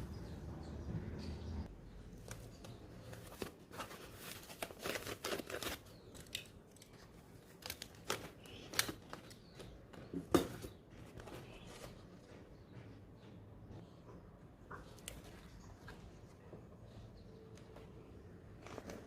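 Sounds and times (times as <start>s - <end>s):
material crinkling: 2.2s - 9.7s.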